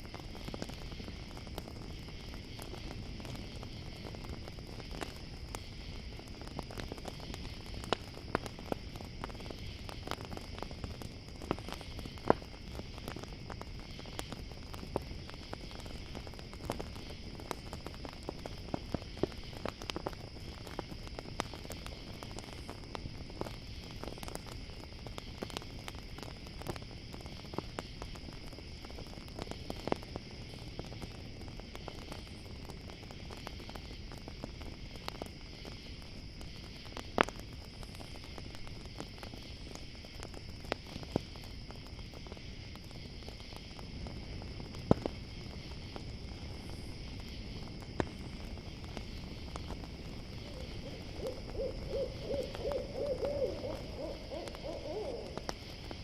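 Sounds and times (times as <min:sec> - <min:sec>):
campfire crackling and popping: 0:00.0 - 0:56.0
crickets chirping: 0:00.0 - 0:56.0
owl hooting: 0:50.5 - 0:55.5.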